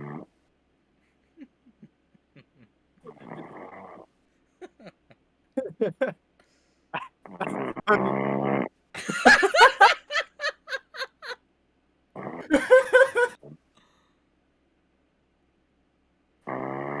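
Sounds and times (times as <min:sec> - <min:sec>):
person laughing stifled: 0:01.3 - 0:03.5, 0:04.6 - 0:06.2, 0:09.0 - 0:11.4, 0:12.4 - 0:13.4
person snoring: 0:03.1 - 0:04.0.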